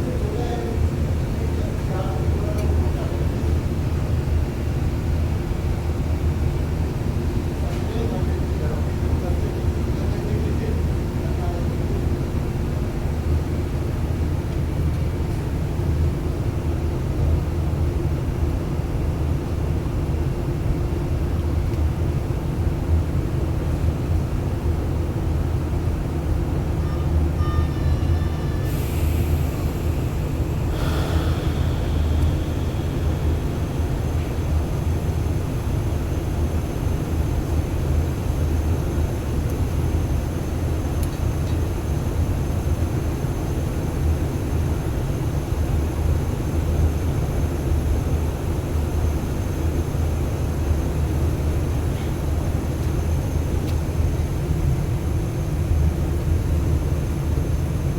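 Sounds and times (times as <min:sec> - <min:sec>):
machinery rumbling and humming: 0:13.5 - 0:57.9.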